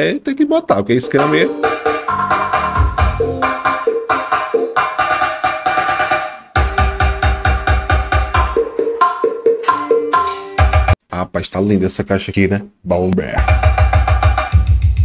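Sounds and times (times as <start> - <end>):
electronic dance music: 1.0 - 9.4
heavy bass kicks: 2.4 - 3.3.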